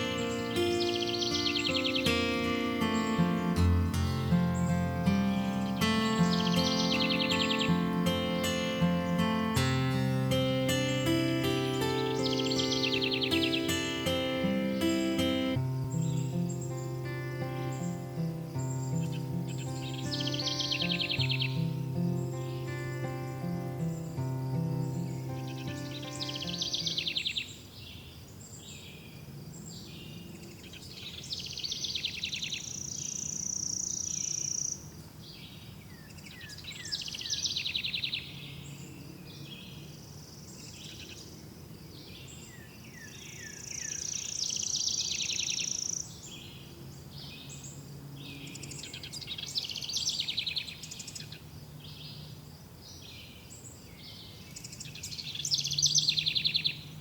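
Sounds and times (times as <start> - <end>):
songbird singing trills and whistles: 0.0 - 28.0, 29.8 - 34.8, 42.0 - 51.4, 54.0 - 56.9.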